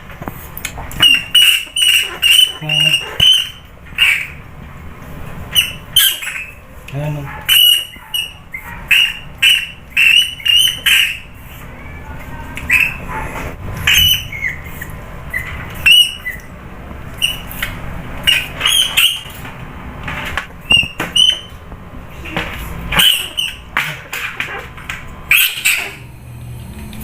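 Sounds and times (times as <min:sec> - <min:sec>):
rat squeaking: 0:00.9 - 0:04.5, 0:05.5 - 0:16.5, 0:17.1 - 0:19.5, 0:20.6 - 0:26.0.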